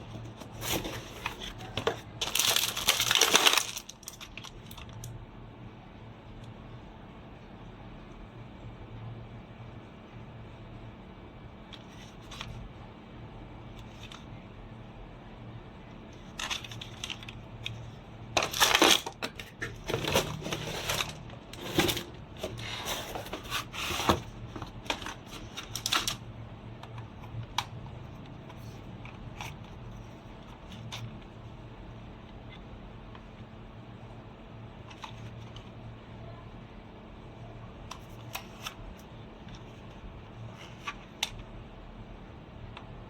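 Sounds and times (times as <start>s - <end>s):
crinkling handling noise: 0.0s - 5.2s, 11.6s - 12.9s, 13.5s - 14.7s, 15.9s - 33.3s, 34.7s - 35.9s, 37.7s - 41.7s
low steady hum: 0.0s - 43.0s.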